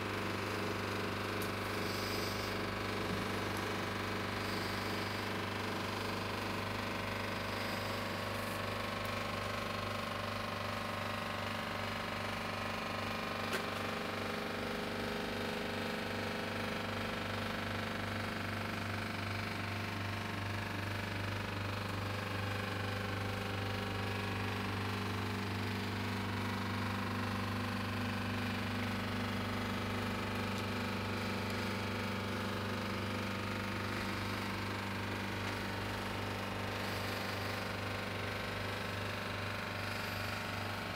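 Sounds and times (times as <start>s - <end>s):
refrigerator compressor humming: 0.0s - 40.9s.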